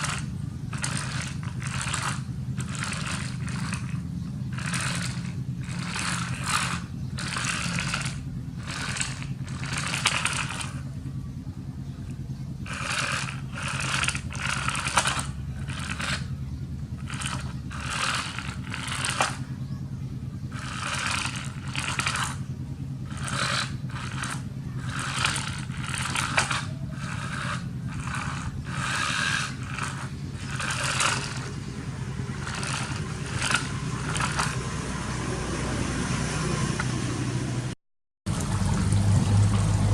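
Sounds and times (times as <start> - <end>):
plastic toy vehicles scraping: 0.0 - 11.0, 12.5 - 35.2
steady low hum: 0.0 - 39.9.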